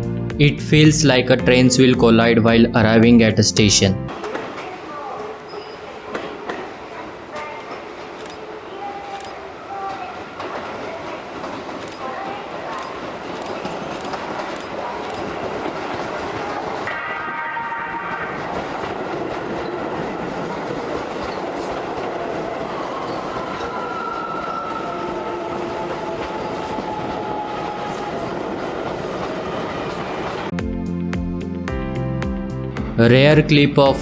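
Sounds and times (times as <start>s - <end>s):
train wheels rumbling on track: 4.1s - 30.6s
train horn blast: 16.8s - 19.7s.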